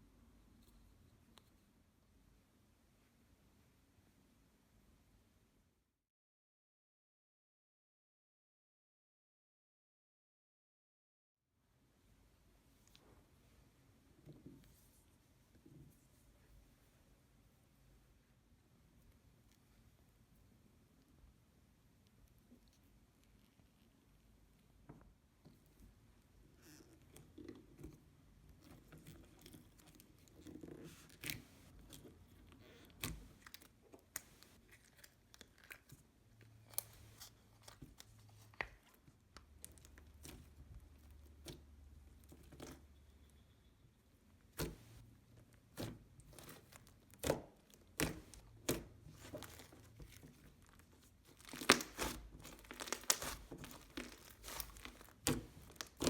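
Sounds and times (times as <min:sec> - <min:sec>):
slime being squished by hand: 0:44.5 - 0:56.0.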